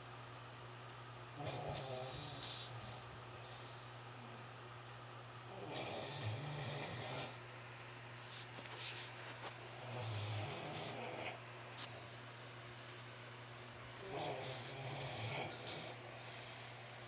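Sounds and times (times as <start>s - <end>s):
man snoring: 1.4s - 3.1s, 5.5s - 7.4s, 9.7s - 11.4s, 13.8s - 16.6s.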